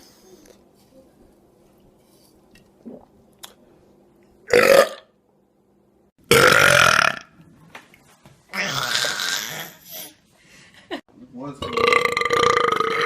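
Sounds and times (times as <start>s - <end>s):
man burping: 4.5s - 5.0s, 6.3s - 7.3s, 11.6s - 13.0s.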